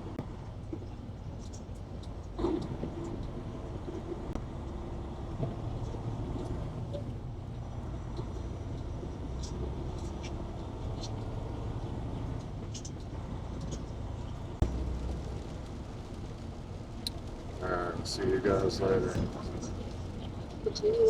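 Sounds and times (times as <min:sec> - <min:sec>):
truck engine and road noise: 0:00.0 - 0:21.0
faint ticks: 0:17.0 - 0:17.4.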